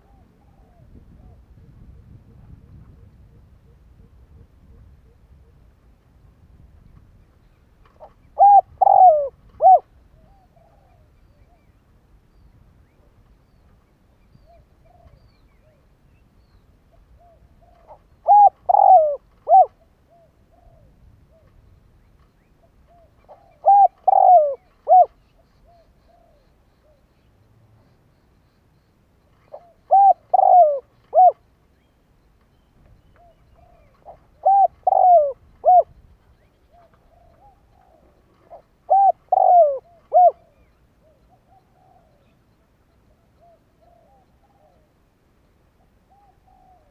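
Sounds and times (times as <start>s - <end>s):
dove cooing: 0.0s - 5.7s, 7.8s - 11.7s, 14.4s - 15.8s, 16.9s - 21.7s, 22.6s - 27.0s, 29.4s - 31.4s, 33.2s - 36.0s, 36.6s - 42.5s, 43.1s - 45.0s, 46.1s - 46.9s
faint soft bird notes: 0.0s - 46.9s.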